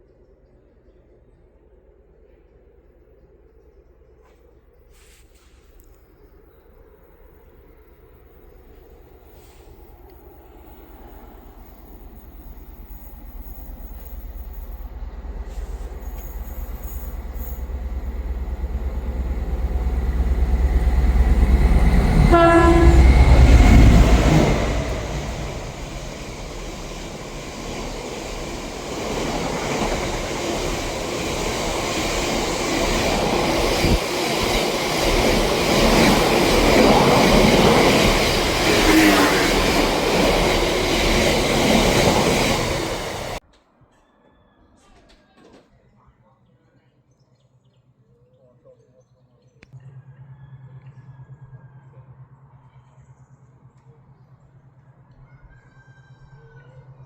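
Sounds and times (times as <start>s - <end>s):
wheel and rail noise: 0.0s - 43.7s
train passing with low rumble: 0.0s - 43.8s, 49.5s - 57.0s
train horn blast: 20.1s - 28.9s, 37.9s - 40.6s.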